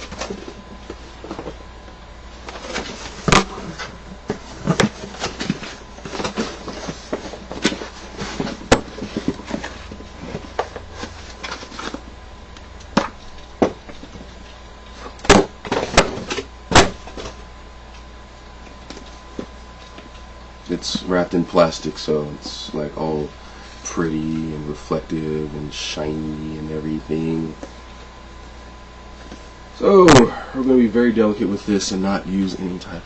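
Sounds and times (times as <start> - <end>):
packaging rustling and scraping: 0.0 - 1.6, 2.4 - 12.1.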